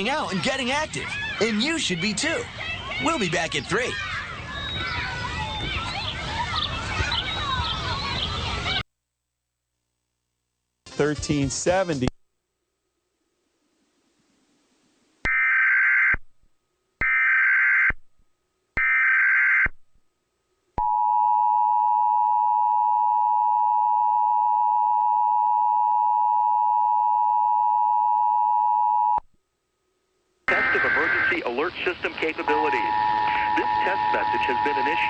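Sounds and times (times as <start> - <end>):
warbling digital data tones: 30.5 - 35.0
two-tone attention signal: 32.3 - 35.0.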